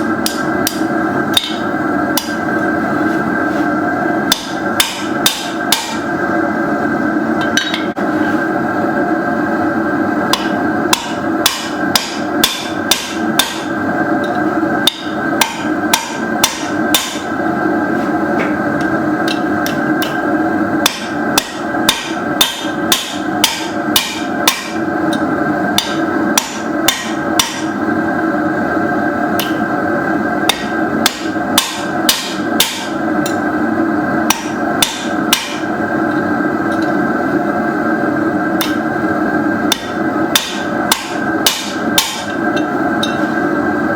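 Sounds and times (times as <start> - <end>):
steady hum: 0.0 - 43.9
hammer striking steel on anvil: 0.2 - 2.5, 4.3 - 6.1, 7.4 - 8.0, 10.3 - 17.3, 18.8 - 27.8, 29.4 - 29.7, 30.5 - 33.5, 34.3 - 37.0, 38.6 - 38.9, 39.7 - 43.4.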